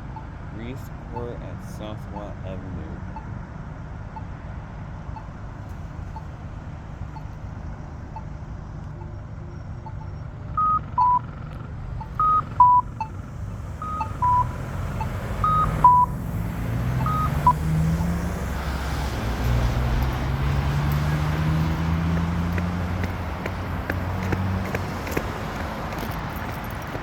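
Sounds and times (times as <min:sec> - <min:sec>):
two-note electronic beep: 0:00.0 - 0:03.3, 0:09.0 - 0:11.3, 0:12.0 - 0:16.2, 0:16.9 - 0:18.7
crosswalk locator tone ticking: 0:00.0 - 0:27.0
vehicle accelerating: 0:05.1 - 0:27.0.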